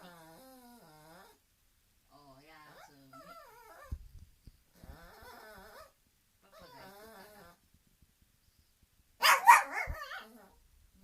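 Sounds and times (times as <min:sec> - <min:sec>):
dog whining softly: 0:04.8 - 0:07.6.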